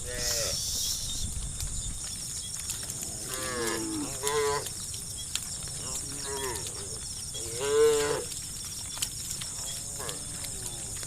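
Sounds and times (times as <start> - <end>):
cows mooing: 3.0 - 4.7, 5.8 - 8.4, 9.6 - 11.0.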